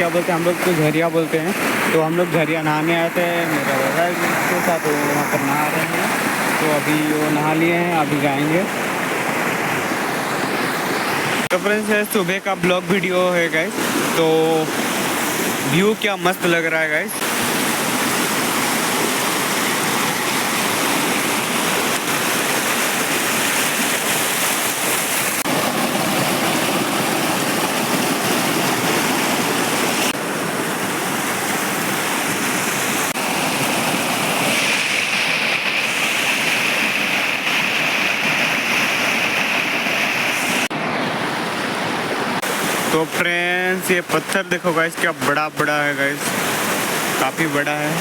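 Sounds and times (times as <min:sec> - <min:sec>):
stream rushing over rocks: 0:00.0 - 0:48.0.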